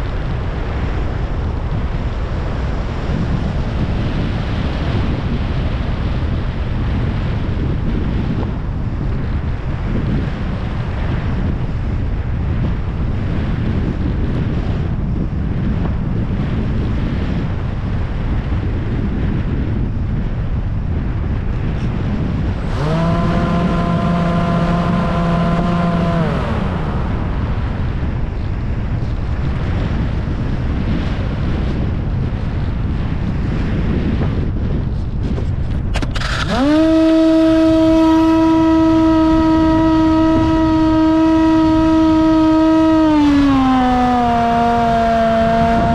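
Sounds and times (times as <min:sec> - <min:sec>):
wind rushing over camera: 0:00.0 - 0:45.9
electric motor and propeller whining: 0:20.9 - 0:32.0, 0:32.9 - 0:45.9.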